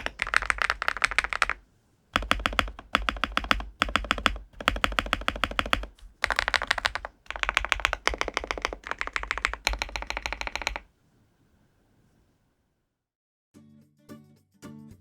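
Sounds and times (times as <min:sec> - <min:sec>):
fast typing on mechanical keyboard: 0:00.0 - 0:01.6, 0:02.2 - 0:10.9.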